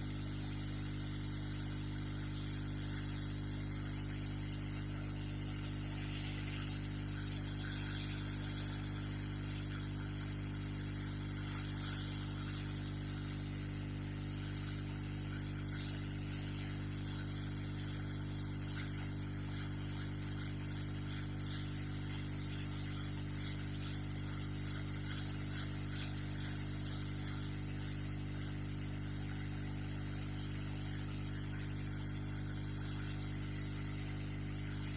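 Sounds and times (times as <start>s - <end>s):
hot air blower hissing: 0.0s - 14.9s
low electrical hum: 0.0s - 34.9s.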